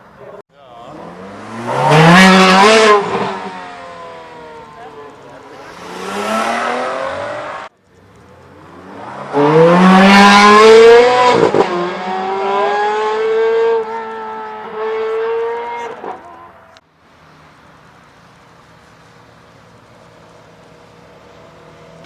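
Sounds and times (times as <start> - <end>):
sports car engine revving: 0.8 - 16.8.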